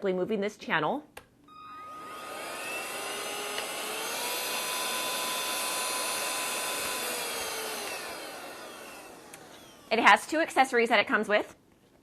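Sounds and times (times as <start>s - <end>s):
handheld vacuum whine: 1.5s - 10.3s.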